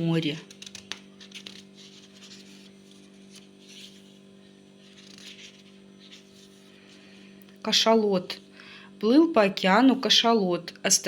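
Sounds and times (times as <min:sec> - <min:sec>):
electrical mains hum: 0:00.0 - 0:11.0
faint rubbing and scratching: 0:00.5 - 0:07.1.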